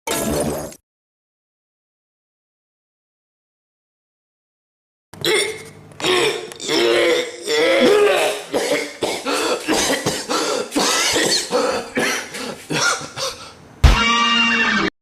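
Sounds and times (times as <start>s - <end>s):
person coughing: 5.2s - 13.6s.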